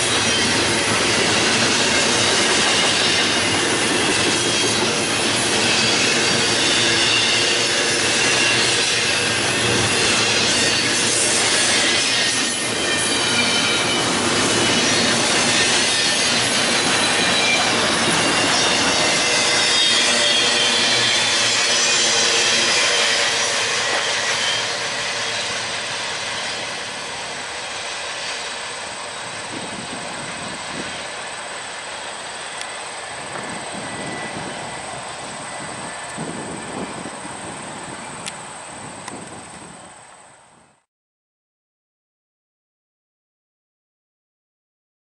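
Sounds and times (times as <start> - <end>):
high-pitched wheel squeals: 0.0 - 31.3, 32.1 - 38.2
freight train rolling past: 0.0 - 40.7.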